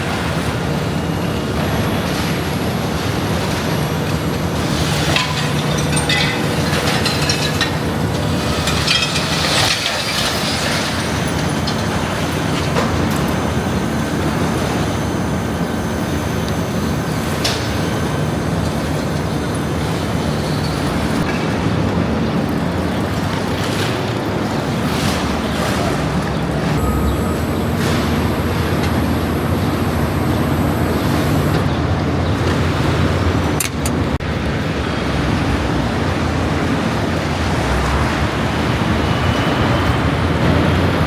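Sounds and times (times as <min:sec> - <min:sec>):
vehicle engine humming: 0:00.0 - 0:41.0
crackling and clattering: 0:03.7 - 0:13.5.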